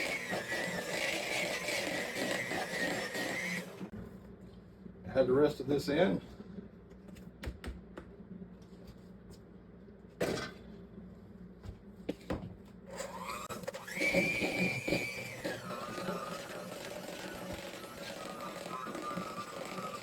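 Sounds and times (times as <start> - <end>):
electric mixer whining: 0.0 - 3.9, 13.0 - 20.0.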